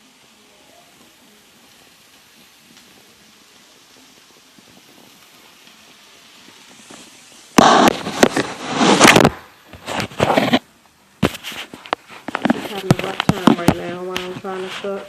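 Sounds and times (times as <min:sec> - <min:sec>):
knocks and scraping on microphone: 0:07.6 - 0:15.0.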